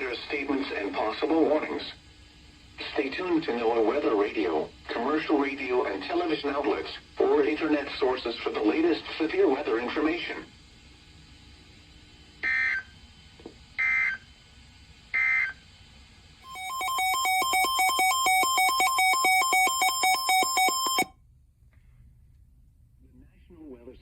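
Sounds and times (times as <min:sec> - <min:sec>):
screechy digital data bursts: 0:16.5 - 0:21.1
warbling electronic alert tone: 0:16.5 - 0:21.1.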